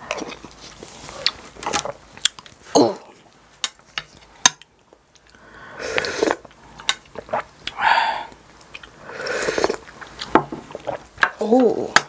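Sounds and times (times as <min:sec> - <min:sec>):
person sipping broth: 0:05.2 - 0:11.4.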